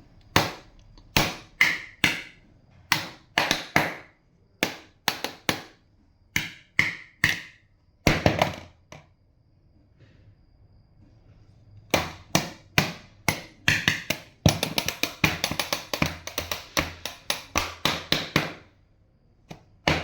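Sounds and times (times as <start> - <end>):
hollow knocks on empty jug: 11.9 - 18.6.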